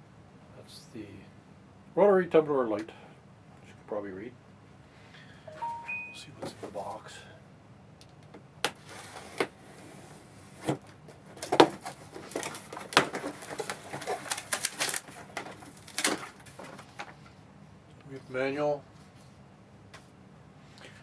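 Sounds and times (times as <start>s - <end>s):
cardboard and packaging rustling: 10.2s - 17.3s.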